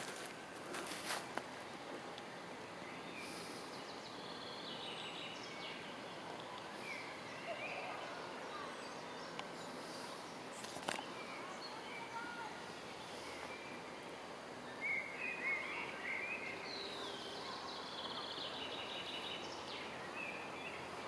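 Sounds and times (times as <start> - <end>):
small birds chirping: 0.0 - 21.0
steady background hiss: 0.0 - 21.0.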